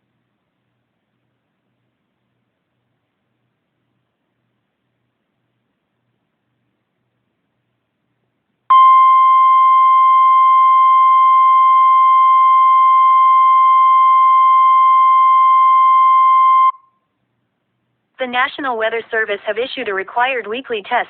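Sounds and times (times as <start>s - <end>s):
loud steady alarm beep: 8.7s - 16.8s.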